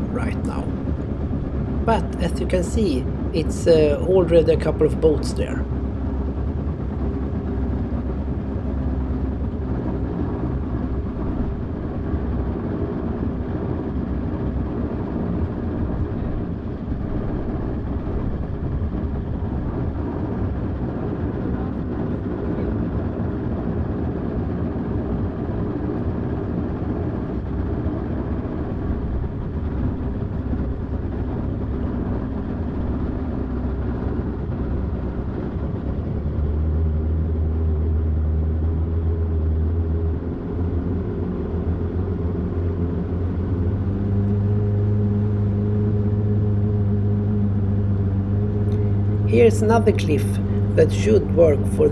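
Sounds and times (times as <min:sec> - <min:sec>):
motorboat engines droning: 0:00.0 - 0:06.3, 0:43.5 - 0:51.9.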